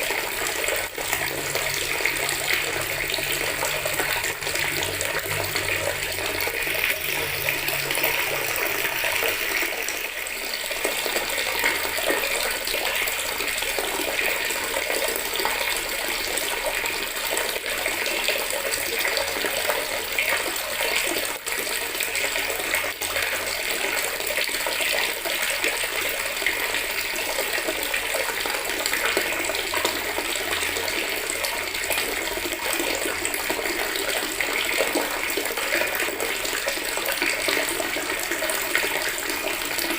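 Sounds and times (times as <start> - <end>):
tap water running into bucket: 0.0 - 39.9.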